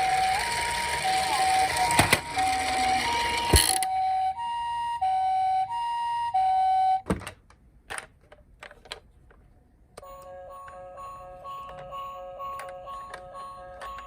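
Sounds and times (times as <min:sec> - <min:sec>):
toy siren two-tone beeps: 0:00.0 - 0:07.0, 0:10.0 - 0:14.0.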